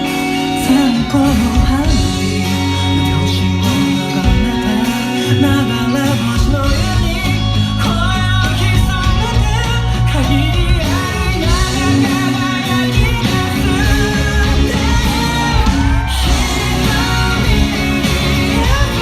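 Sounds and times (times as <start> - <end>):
bass and guitar: 0.0 - 19.0
pop-rock song with lead vocal: 0.0 - 19.0.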